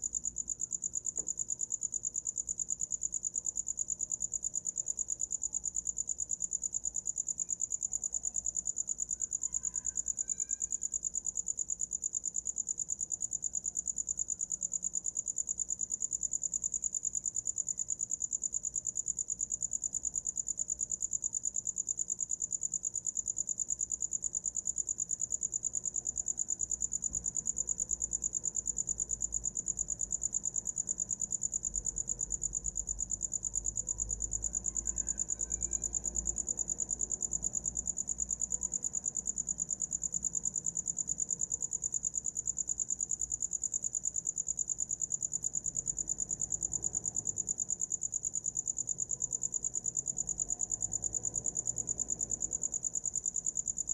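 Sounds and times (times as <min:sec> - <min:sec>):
cricket trilling: 0:00.0 - 0:53.9.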